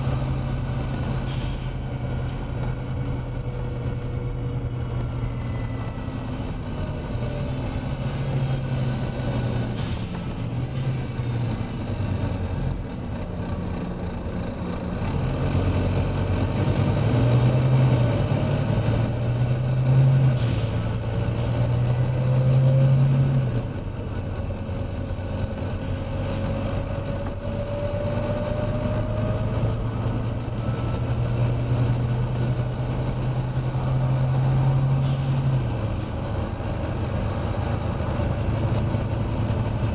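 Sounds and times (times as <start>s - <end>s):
bus diesel engine under load: 0.0s - 39.9s
air hissing from bus brakes: 1.2s - 2.6s, 9.7s - 11.2s, 20.2s - 21.6s, 25.8s - 26.6s, 34.6s - 35.7s.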